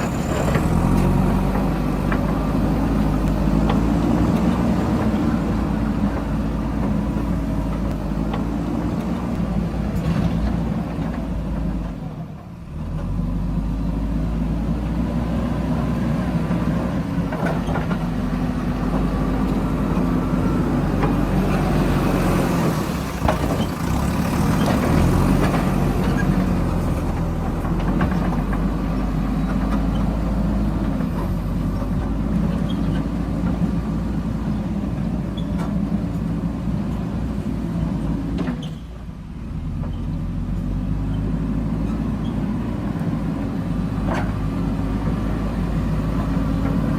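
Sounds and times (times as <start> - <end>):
knocks and scraping: 0.0 - 13.2, 15.9 - 37.1
heavy diesel engine running: 0.0 - 46.9.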